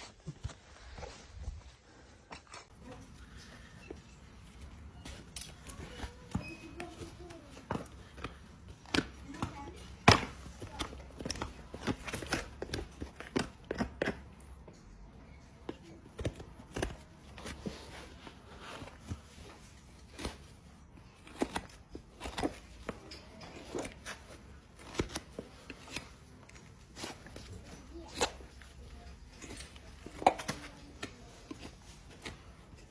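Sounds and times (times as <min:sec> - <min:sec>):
tools cutting hoof: 0:21.0 - 0:32.9.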